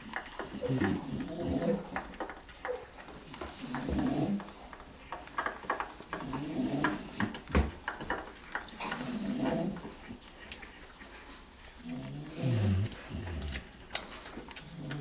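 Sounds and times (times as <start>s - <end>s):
animal snoring: 0.1s - 2.3s, 3.4s - 4.8s, 6.2s - 7.4s, 8.8s - 10.2s, 11.8s - 13.7s, 14.6s - 15.0s.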